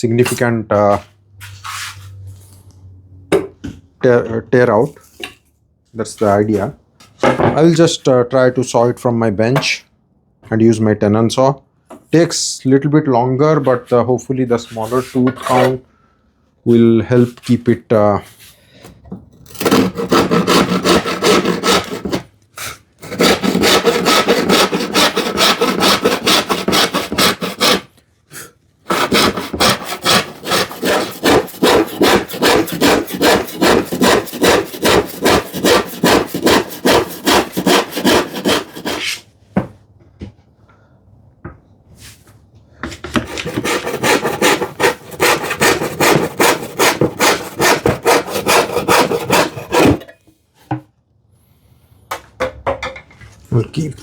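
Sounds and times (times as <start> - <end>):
hand saw cutting plywood: 19.4 - 27.9, 28.8 - 39.2, 42.9 - 50.0.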